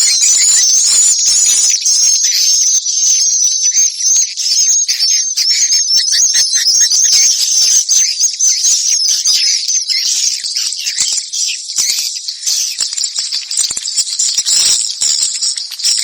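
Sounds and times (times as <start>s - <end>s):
swiftlet chirps and twitters: 0.0s - 2.5s.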